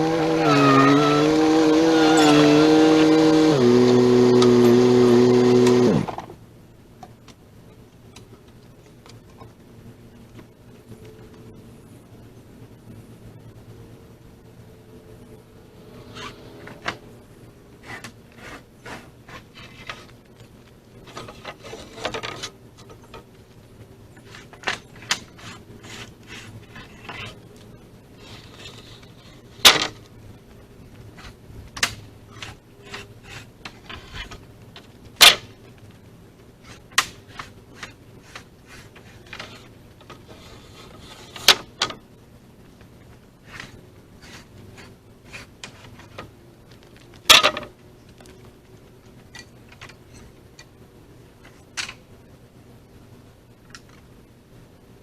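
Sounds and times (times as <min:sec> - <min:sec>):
wood scraping and rubbing: 0:17.8 - 0:20.2, 0:21.0 - 0:23.3, 0:24.2 - 0:27.6, 0:28.2 - 0:30.0, 0:32.3 - 0:34.5, 0:36.6 - 0:41.8, 0:43.4 - 0:48.3.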